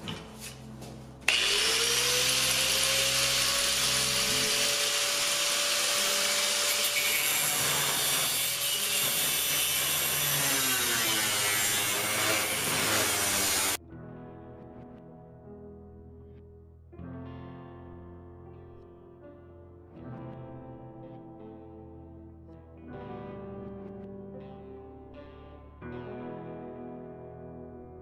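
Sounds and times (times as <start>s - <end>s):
angle grinder cutting: 1.3s - 13.8s.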